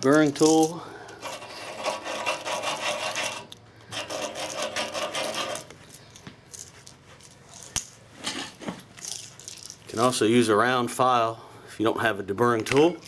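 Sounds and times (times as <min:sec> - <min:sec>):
deburring tool scraping steel: 0:00.0 - 0:05.8.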